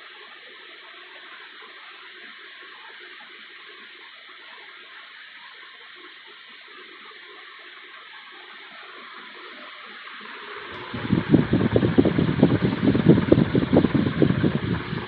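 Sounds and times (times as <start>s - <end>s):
ceiling fan running: 7.2s - 15.0s.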